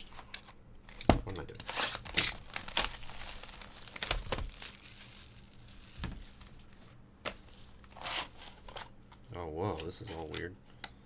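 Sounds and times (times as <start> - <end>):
packaging crinkling and tearing: 0.9 - 6.9.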